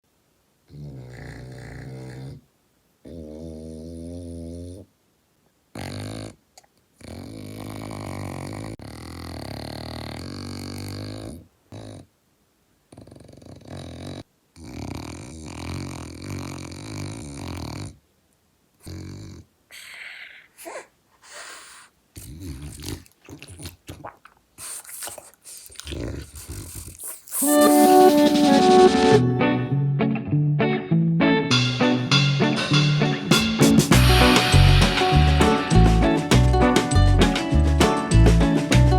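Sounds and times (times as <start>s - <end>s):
dog snoring: 0.7s - 2.4s, 3.0s - 4.9s, 5.7s - 6.4s, 7.0s - 12.1s, 12.9s - 18.0s, 18.8s - 28.1s.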